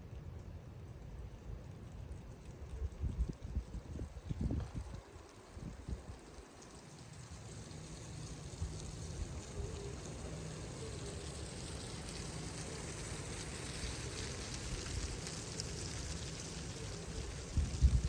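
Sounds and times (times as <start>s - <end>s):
wind buffeting microphone: 2.7s - 6.4s, 17.4s - 18.0s.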